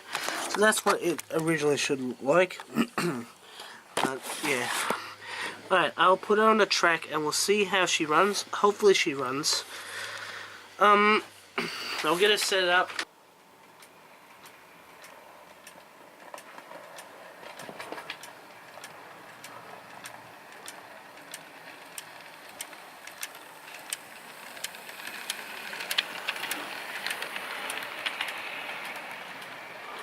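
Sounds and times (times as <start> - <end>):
light clicks of wheels on track: 0.0 - 1.8, 3.4 - 10.8, 11.9 - 30.0
model train motor whir: 3.3 - 30.0.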